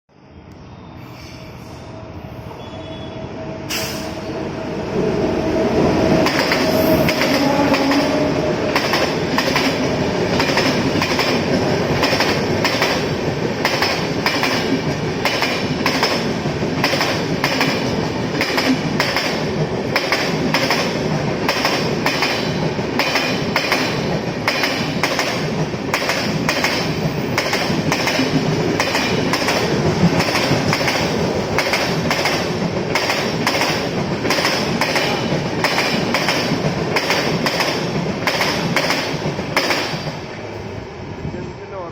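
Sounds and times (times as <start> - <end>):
train rumble: 1.0 - 41.9
train wheels clacking on rails: 6.1 - 40.4.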